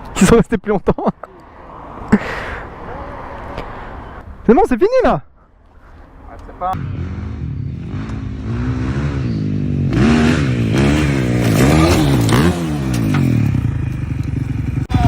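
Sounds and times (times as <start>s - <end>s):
motorcycle engine revving: 6.8s - 15.0s.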